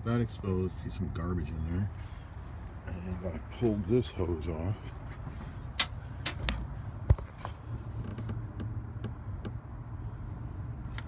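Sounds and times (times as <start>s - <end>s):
clicks and knocks from handling parts: 5.8s - 8.4s.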